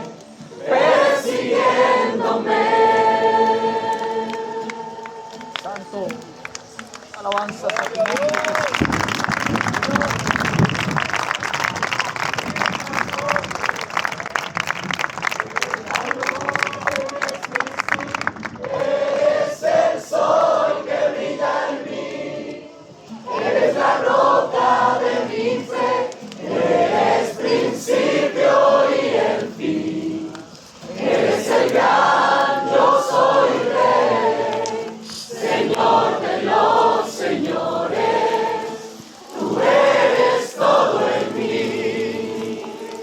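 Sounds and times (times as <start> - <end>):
group singing a praise song: 0.0 - 6.0, 18.6 - 43.0.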